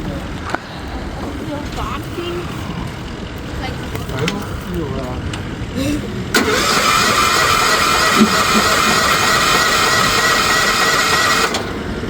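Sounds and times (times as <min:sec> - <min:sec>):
electric starter cranking engine: 0:02.7 - 0:12.0.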